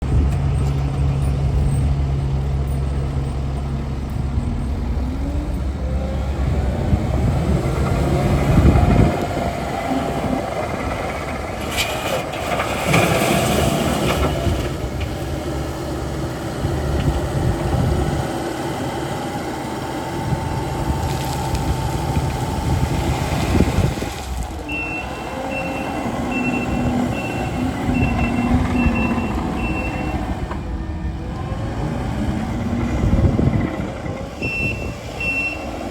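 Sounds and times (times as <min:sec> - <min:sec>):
diesel engine running: 0:00.0 - 0:35.9
backup alarm beeping: 0:24.7 - 0:30.3, 0:34.4 - 0:35.7.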